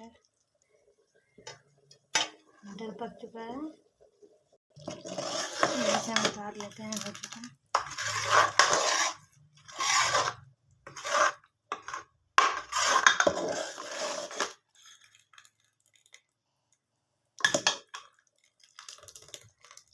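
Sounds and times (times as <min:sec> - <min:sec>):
metal pot and utensils clattering: 0:01.4 - 0:02.6, 0:04.8 - 0:09.2, 0:11.7 - 0:14.6, 0:17.4 - 0:18.1.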